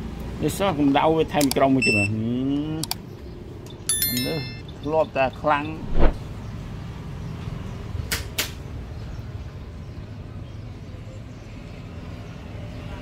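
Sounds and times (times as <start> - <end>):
sharp clicks: 1.4 - 1.6.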